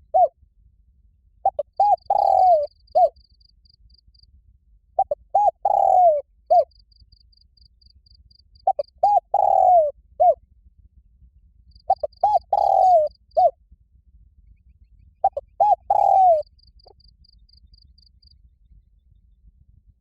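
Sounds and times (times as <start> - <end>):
dove cooing: 0.0 - 0.3, 1.4 - 3.2, 5.0 - 6.7, 8.6 - 10.4, 11.9 - 13.6, 15.2 - 17.0.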